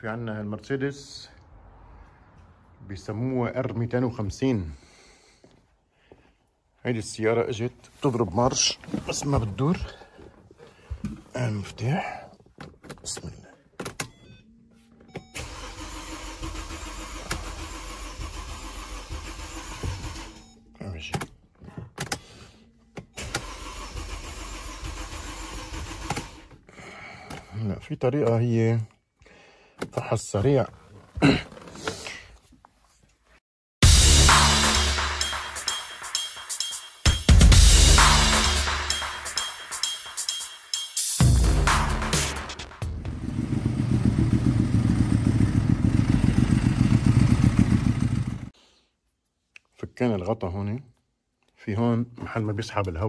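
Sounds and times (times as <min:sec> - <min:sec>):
engine cranking on starter: 0:15.4 - 0:20.5, 0:23.2 - 0:26.5.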